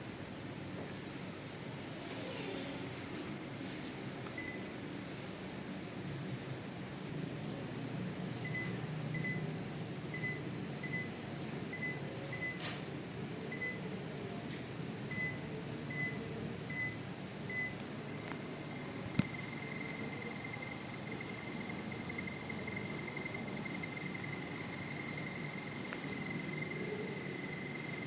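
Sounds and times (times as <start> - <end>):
air conditioner beeps: 4.2 - 5.0, 8.4 - 12.8, 13.5 - 13.9, 15.0 - 28.0
fan humming: 12.9 - 28.0
continuous high tone: 17.6 - 28.0.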